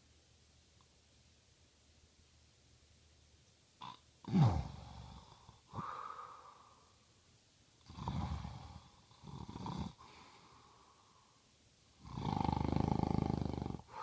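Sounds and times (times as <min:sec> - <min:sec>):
man snoring: 0:03.8 - 0:05.9, 0:07.8 - 0:10.1, 0:12.0 - 0:14.0
breathy exhale: 0:05.7 - 0:07.0, 0:10.0 - 0:11.4.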